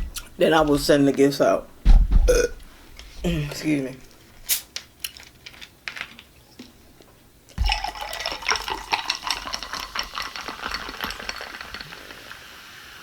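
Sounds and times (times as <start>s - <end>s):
soda pouring and fizzing: 7.6s - 13.0s.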